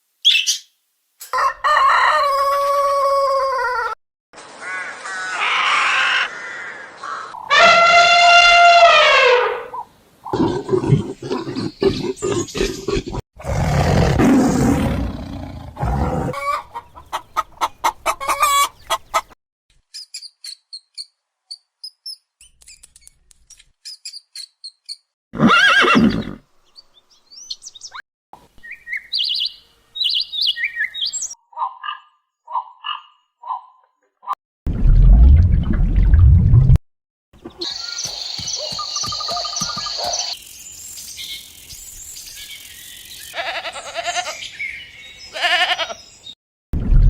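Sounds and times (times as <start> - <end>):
bird-like chirping: 0.2 - 0.7, 28.6 - 33.9, 37.4 - 43.4
high chirps: 37.6 - 41.8.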